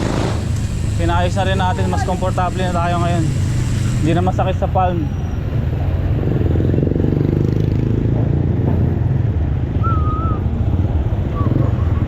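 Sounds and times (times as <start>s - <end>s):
motor vehicles running: 0.0s - 12.0s
road traffic rumble: 0.0s - 12.0s
wind: 0.0s - 12.0s
high wavering whistle: 9.8s - 10.5s.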